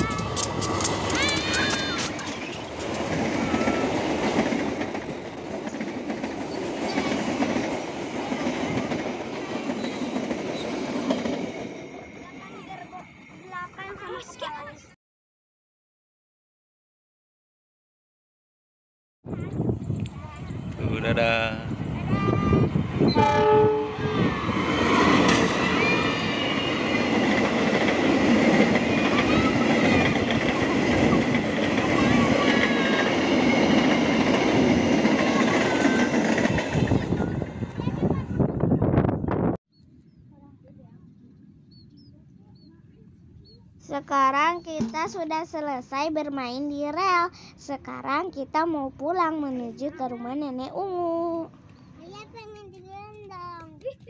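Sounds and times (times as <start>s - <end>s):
train wheels rushing on rails: 0.0s - 13.9s, 19.6s - 38.9s.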